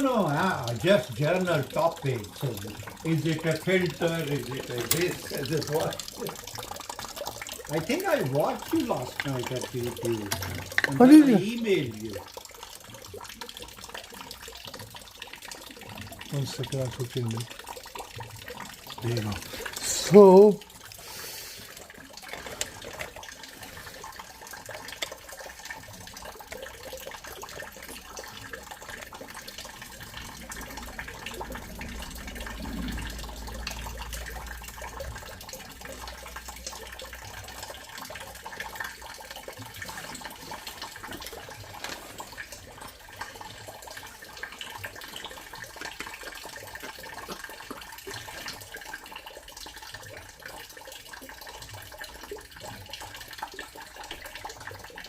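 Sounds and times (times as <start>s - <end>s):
water running: 0.0s - 55.0s
low rumble: 30.6s - 34.9s.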